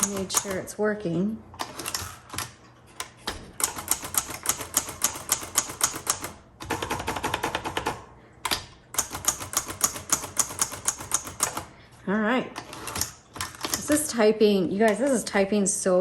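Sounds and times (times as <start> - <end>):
typewriter key strikes: 0.0 - 0.6, 3.3 - 11.6.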